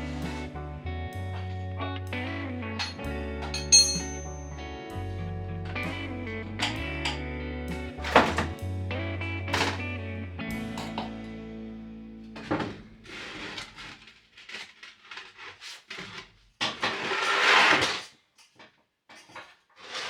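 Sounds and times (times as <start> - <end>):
background music: 0.0 - 12.5
metallic clatter: 2.8 - 4.3.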